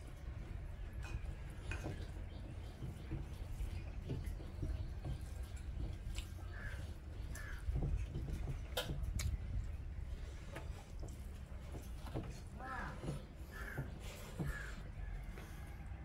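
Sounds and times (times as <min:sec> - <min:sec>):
clicks and knocks from eating: 0:00.8 - 0:15.6
crow cawing: 0:06.5 - 0:07.7.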